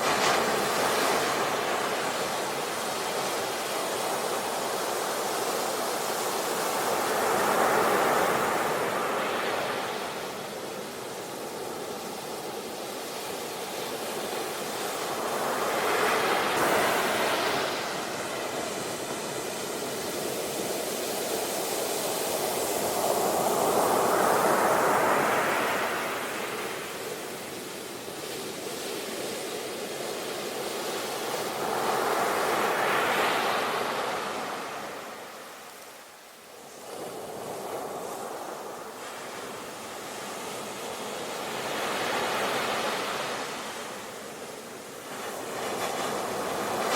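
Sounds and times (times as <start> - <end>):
sea waves breaking: 13.3 - 29.3.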